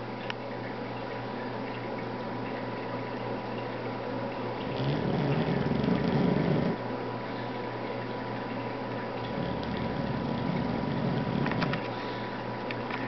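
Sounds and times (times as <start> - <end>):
steady hum: 0.0 - 13.0
dog snoring loudly: 4.6 - 6.8, 9.3 - 11.8.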